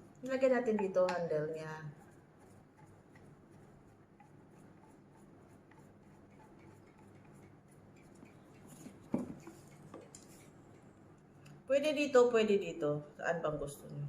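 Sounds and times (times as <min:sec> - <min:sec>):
knock: 0:09.1 - 0:09.4.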